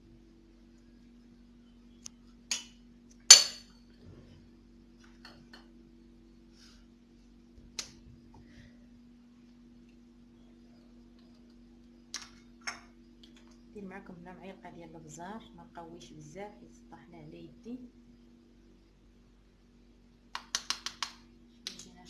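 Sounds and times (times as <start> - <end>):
faint low hum: 0.0 - 22.0
kitchenware clinking: 3.3 - 3.7.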